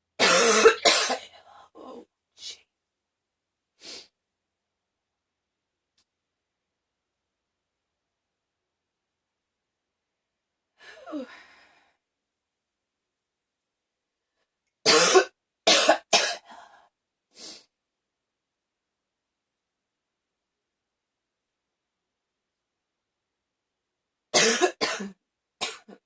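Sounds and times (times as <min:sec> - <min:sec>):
woman coughing: 0:00.2 - 0:01.3, 0:14.9 - 0:16.5, 0:24.4 - 0:26.0.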